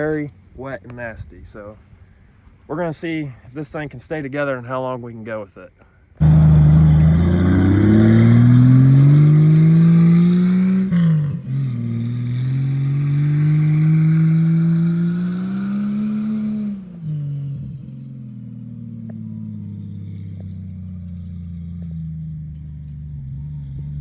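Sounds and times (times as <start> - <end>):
car engine revving: 6.2 - 16.8.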